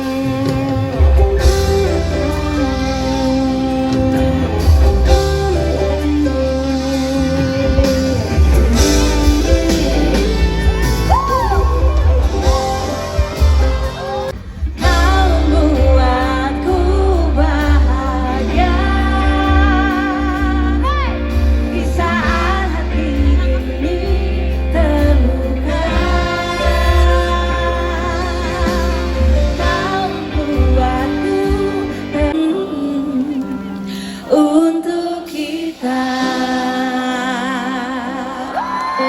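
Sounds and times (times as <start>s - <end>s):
live pop band: 0.0s - 39.0s
person singing with vibrato: 0.0s - 39.0s.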